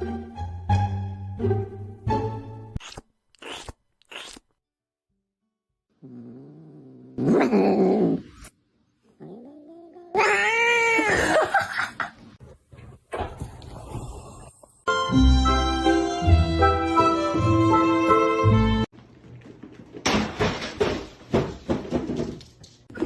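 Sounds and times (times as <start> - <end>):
cat yowling: 9.3 - 11.2.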